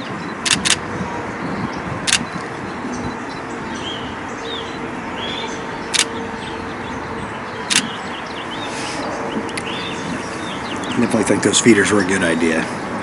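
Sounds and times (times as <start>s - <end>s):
background rush with hum: 0.0s - 13.0s
camera shutter clicks: 0.4s - 0.8s, 2.1s - 2.4s.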